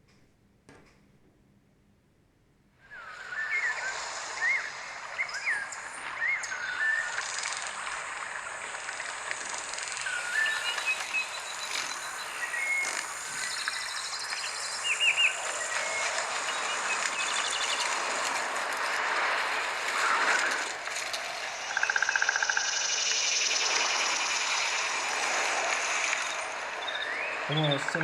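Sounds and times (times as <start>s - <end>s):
steady outdoor hiss: 2.7s - 28.0s
high bird chirps and trills: 9.9s - 18.2s.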